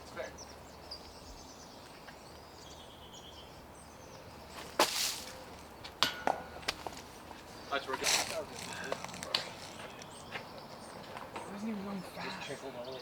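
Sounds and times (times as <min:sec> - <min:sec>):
faint birds chirping: 0:00.0 - 0:13.0.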